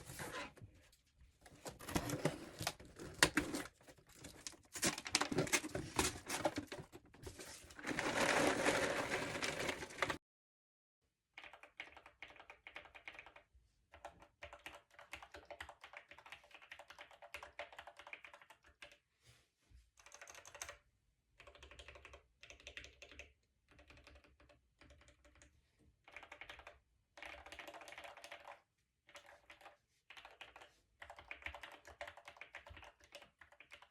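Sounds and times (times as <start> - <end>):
mechanical keyboard typing: 11.4 - 19.0, 20.0 - 20.8, 21.4 - 33.9.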